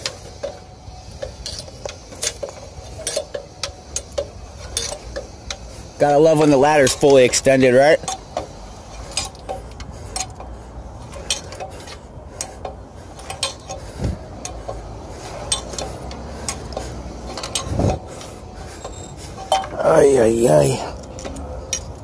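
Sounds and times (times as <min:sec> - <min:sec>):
metal gear clinking: 0:00.3 - 0:10.4, 0:14.4 - 0:18.0, 0:18.6 - 0:22.0.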